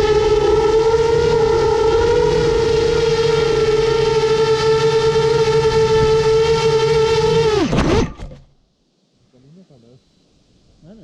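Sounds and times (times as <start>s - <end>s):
drone motors whining: 0.0s - 8.5s.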